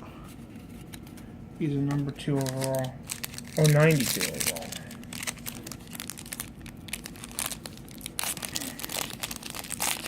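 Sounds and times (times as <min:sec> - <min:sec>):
card wrappers crinkling: 0:00.4 - 0:10.0
wrapper tearing: 0:02.2 - 0:10.0.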